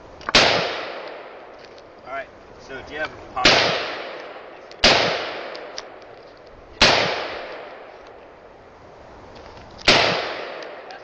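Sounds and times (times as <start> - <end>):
pistol shot with echo: 0.3 - 1.4, 3.4 - 6.0, 6.8 - 7.9, 9.8 - 11.0.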